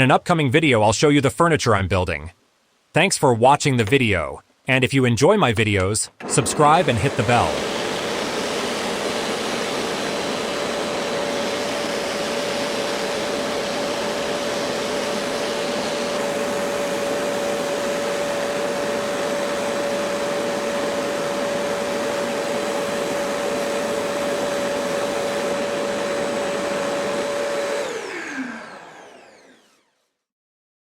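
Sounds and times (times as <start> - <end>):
drill press motor whining: 6.2 - 22.6, 23.3 - 30.1.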